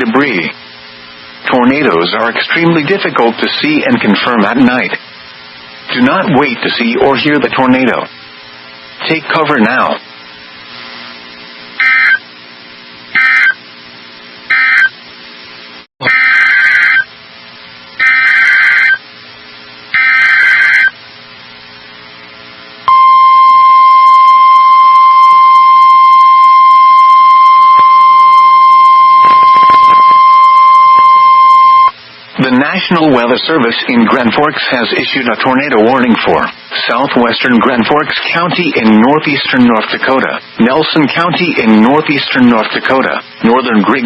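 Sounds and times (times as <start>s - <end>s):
data tone bursts: 11.8s - 12.2s, 13.2s - 13.6s, 14.5s - 15.0s, 20.0s - 21.0s, 22.9s - 32.0s
steady single-pitch alert tone: 11.8s - 12.2s, 13.2s - 13.6s, 14.5s - 15.0s, 20.0s - 21.0s, 22.9s - 32.0s
low hum: 21.0s - 32.6s.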